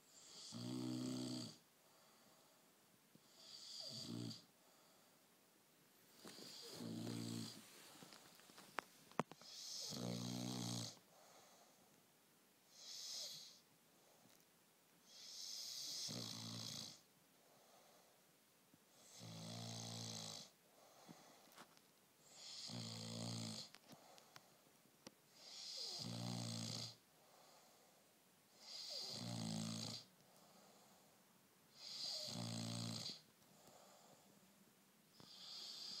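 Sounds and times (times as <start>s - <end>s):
puppy snoring: 0.1s - 1.6s, 3.2s - 4.5s, 6.1s - 8.2s, 9.2s - 11.8s, 12.7s - 13.6s, 15.0s - 17.1s, 18.9s - 20.6s, 22.2s - 23.8s, 25.3s - 27.7s, 28.5s - 30.9s, 31.7s - 34.2s, 35.1s - 36.0s.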